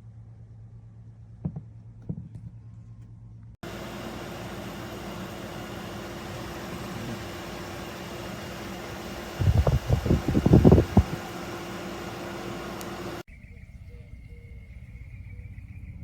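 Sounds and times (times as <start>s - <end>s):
air conditioner fan noise: 3.1s - 13.3s.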